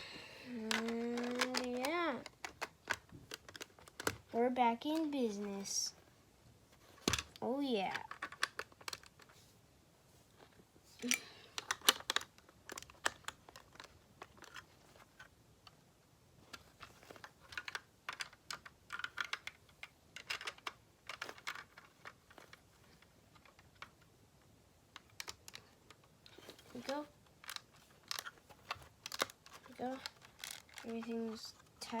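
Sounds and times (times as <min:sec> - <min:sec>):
plastic bricks clicking: 0:00.5 - 0:04.3, 0:07.0 - 0:09.3, 0:11.0 - 0:15.3, 0:16.5 - 0:24.1, 0:24.9 - 0:32.0.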